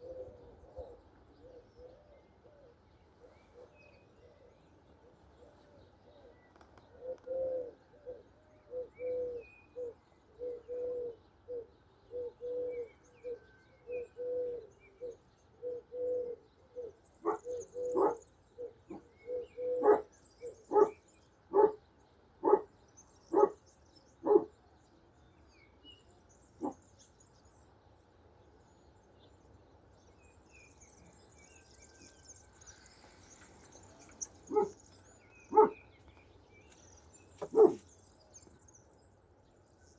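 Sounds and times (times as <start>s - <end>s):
doves cooing: 0.0s - 21.8s, 22.4s - 22.7s, 23.3s - 23.6s, 24.2s - 24.6s, 32.6s - 35.9s, 37.4s - 37.9s
dog barking: 17.2s - 18.2s, 19.7s - 20.1s, 20.7s - 21.8s, 22.4s - 22.7s, 23.3s - 23.6s, 24.2s - 24.5s, 26.6s - 26.8s, 34.5s - 34.8s, 35.5s - 35.8s, 37.4s - 37.8s.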